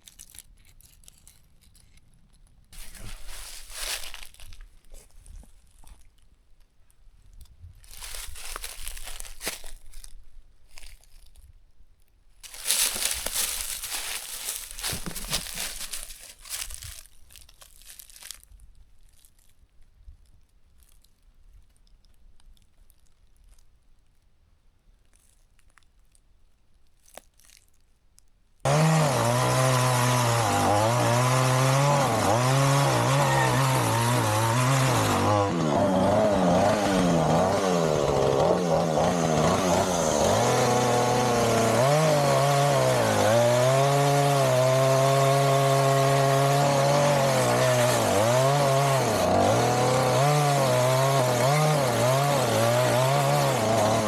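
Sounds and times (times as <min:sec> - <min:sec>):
chainsaw cutting wood: 0:02.8 - 0:04.6, 0:12.4 - 0:17.0, 0:28.6 - 0:54.0.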